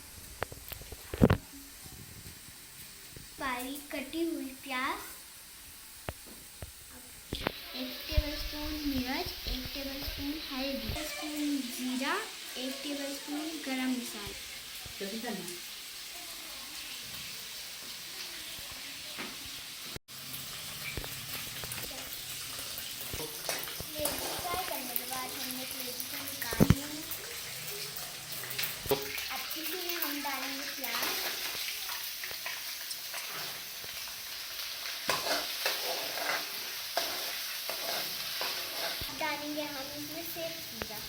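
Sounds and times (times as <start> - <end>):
liver frying in hot oil: 0.0 - 41.0
spoon scraping a pan: 20.7 - 24.9, 30.9 - 39.2.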